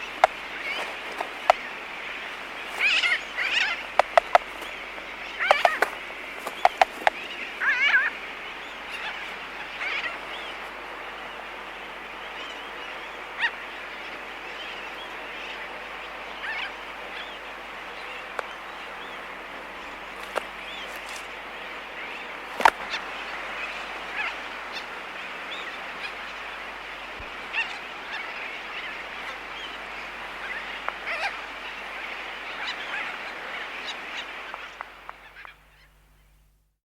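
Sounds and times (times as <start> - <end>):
distant tern chorus: 0.0 - 36.6
albatross bill-clicks: 4.0 - 4.7, 5.5 - 7.2.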